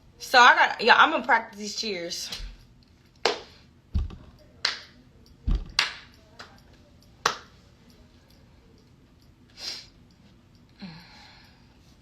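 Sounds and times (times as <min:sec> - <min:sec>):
hand claps: 0:03.2 - 0:03.5, 0:04.6 - 0:05.0, 0:05.7 - 0:06.6, 0:07.2 - 0:07.6
foot stomps: 0:03.9 - 0:04.3.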